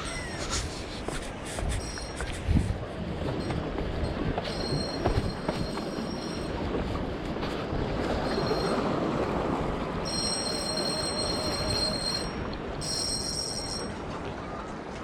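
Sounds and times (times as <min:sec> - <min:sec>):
surf on a rocky shore: 0:00.0 - 0:15.0
wind on the microphone: 0:00.0 - 0:15.0
thin high whine: 0:03.4 - 0:06.7, 0:08.0 - 0:09.4, 0:10.0 - 0:14.0.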